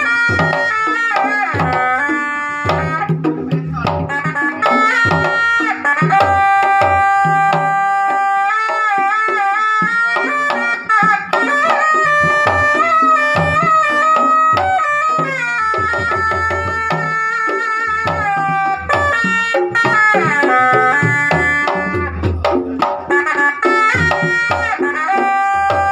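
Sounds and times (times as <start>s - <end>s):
hand drums beating rhythm: 0.0s - 25.9s
high wavering melody line: 8.0s - 22.3s.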